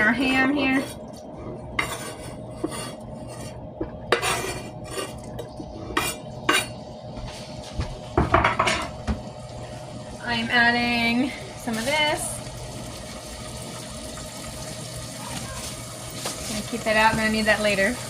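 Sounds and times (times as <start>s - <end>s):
utensil scraping against pot: 1.8s - 6.7s.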